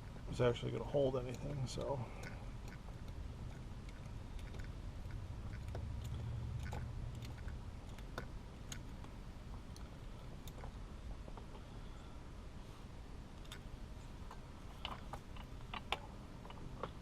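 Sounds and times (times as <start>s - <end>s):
small clicks and rustles: 13.4s - 17.0s.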